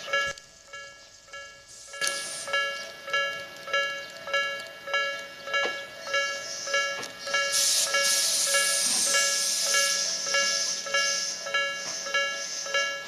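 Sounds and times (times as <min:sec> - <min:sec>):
level crossing warning bell: 0:00.0 - 0:13.0
passing train hiss: 0:01.6 - 0:03.6, 0:06.1 - 0:13.0.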